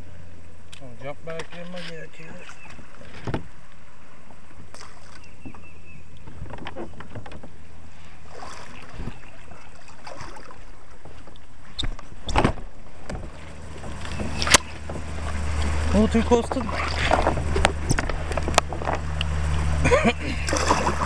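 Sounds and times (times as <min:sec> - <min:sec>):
steady low rumble: 0:00.0 - 0:21.0
water sounds: 0:07.4 - 0:21.0.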